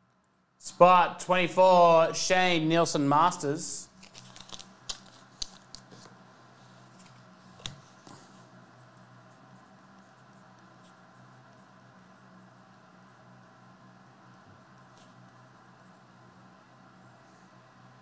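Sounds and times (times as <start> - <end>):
low steady hum: 0.0 - 18.0
cards tapping and scraping: 4.0 - 6.2.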